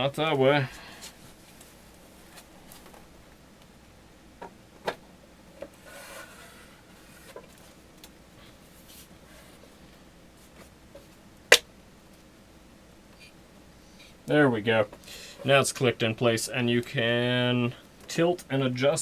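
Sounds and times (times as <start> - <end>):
plastic scrape: 5.6 - 7.8.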